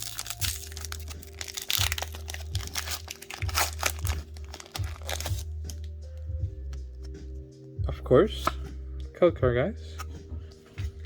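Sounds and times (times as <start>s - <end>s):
foil wrapper crinkling and tearing: 0.0s - 5.9s.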